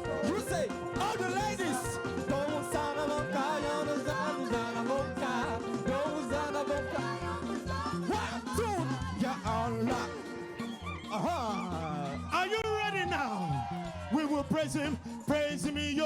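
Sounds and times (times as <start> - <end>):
women singing a praise chant: 0.0 - 12.3
live band playing gospel music: 0.0 - 16.0.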